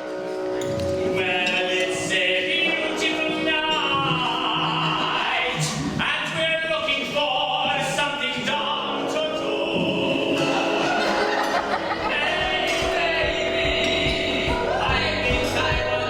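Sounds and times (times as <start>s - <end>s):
person singing: 1.0s - 16.0s
sustained musical accompaniment: 8.7s - 16.0s.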